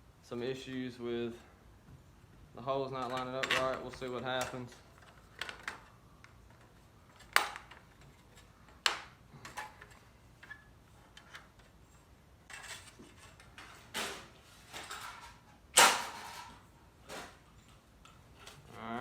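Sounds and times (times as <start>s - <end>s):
metal parts clanking: 3.0s - 4.7s.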